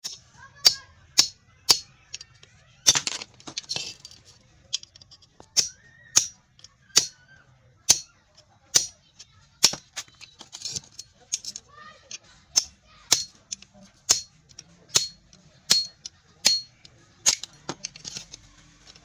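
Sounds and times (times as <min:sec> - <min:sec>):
hammer striking metal: 0:00.0 - 0:01.9, 0:05.6 - 0:06.4, 0:07.0 - 0:07.2, 0:07.9 - 0:08.1, 0:08.7 - 0:09.0, 0:12.6 - 0:13.4, 0:14.1 - 0:18.3.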